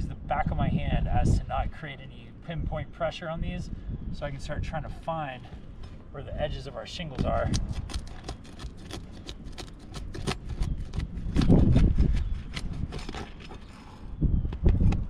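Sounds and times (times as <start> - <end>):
wind rumble on microphone: 0.0 - 15.0.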